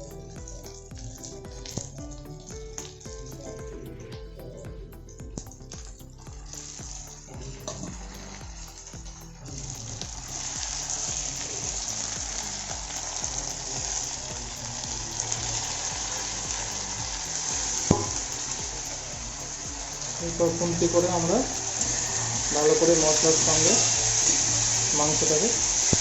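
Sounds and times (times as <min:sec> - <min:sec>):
chicken sizzling in hot oil: 0:06.2 - 0:26.0
spatula knocking pan: 0:15.4 - 0:24.7.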